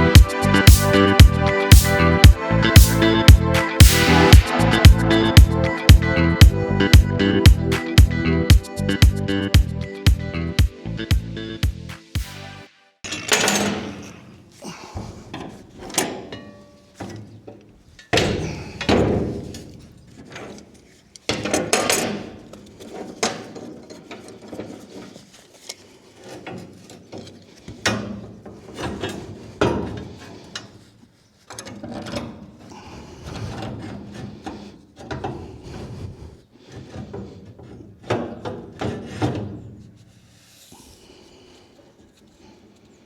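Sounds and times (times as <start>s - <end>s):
tools scraping and knocking: 13.0s - 40.3s.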